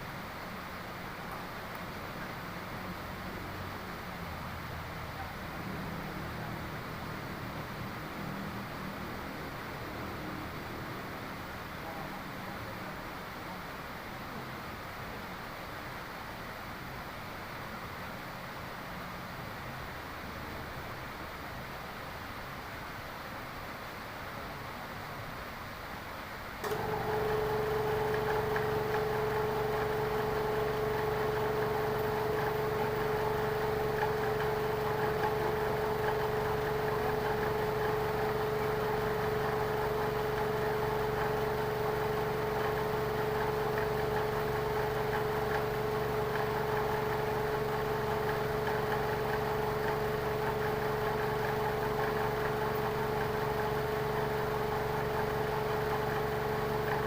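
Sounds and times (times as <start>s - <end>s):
motor whining over low hum: 26.6s - 57.0s.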